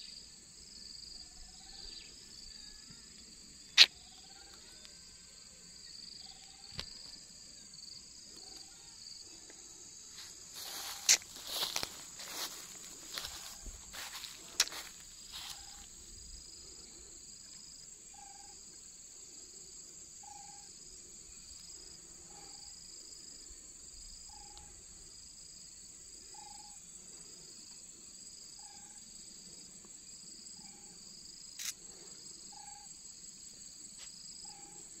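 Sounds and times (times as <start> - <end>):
insects trilling: 0.0 - 35.0
pulsed insect chirp: 0.0 - 35.0
short lower insect call: 0.0 - 35.0
sharp click: 31.6 - 31.8.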